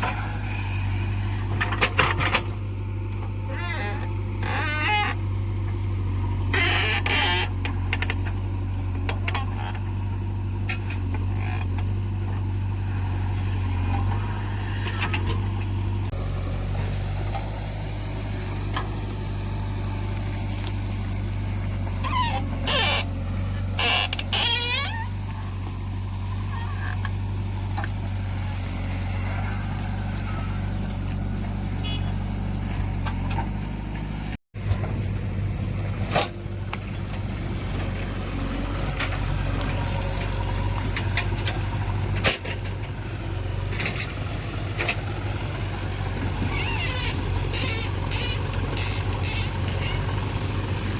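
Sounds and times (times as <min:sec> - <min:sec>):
diesel engine running: 0:00.0 - 0:50.9
short high squeals: 0:21.7 - 0:25.6.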